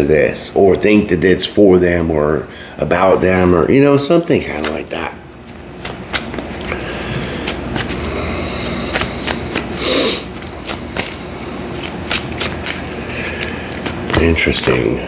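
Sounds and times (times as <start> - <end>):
cards being shuffled: 4.5 - 15.0.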